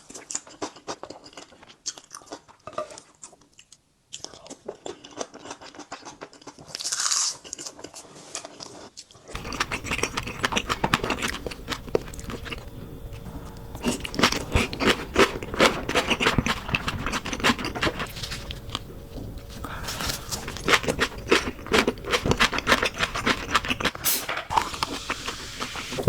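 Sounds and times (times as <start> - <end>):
wet chewing and smacking: 0.1 - 26.0
low hum: 9.4 - 26.0
brief hiss: 24.0 - 26.0.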